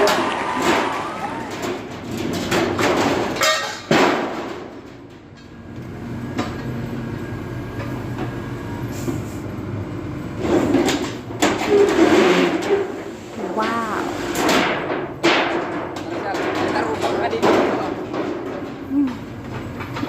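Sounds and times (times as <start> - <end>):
scraping and grinding: 0.0 - 4.9, 10.4 - 20.0
knocks of breaking material: 0.0 - 5.1, 14.4 - 18.9.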